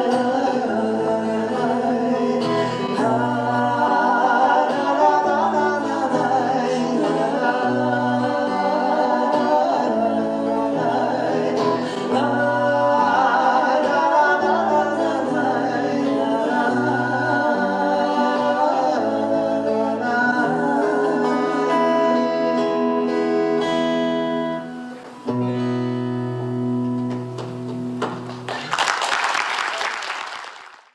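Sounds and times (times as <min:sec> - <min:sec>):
people singing: 0:00.0 - 0:23.8
acoustic guitar: 0:00.0 - 0:28.7.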